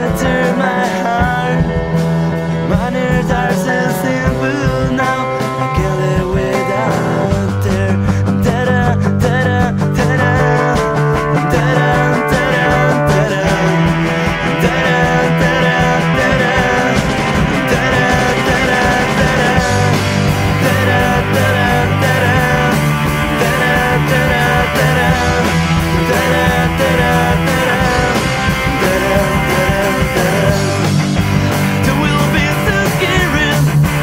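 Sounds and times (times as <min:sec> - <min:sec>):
bass: 0:00.0 - 0:34.0
drums: 0:00.0 - 0:34.0
electric guitars: 0:00.0 - 0:34.0
wavering guitar lead line: 0:00.0 - 0:34.0.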